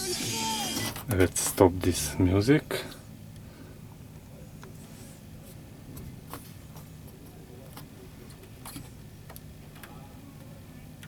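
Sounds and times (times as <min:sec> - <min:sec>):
truck cab hum: 0:00.0 - 0:03.1.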